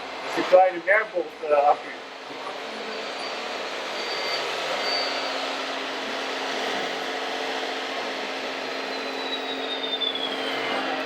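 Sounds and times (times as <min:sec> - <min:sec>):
short high whines: 0:08.8 - 0:11.0.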